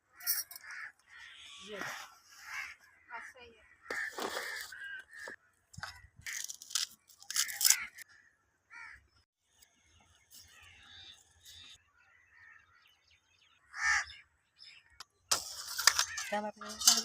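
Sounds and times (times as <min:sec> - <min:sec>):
harsh bird calls: 0:10.3 - 0:17.0.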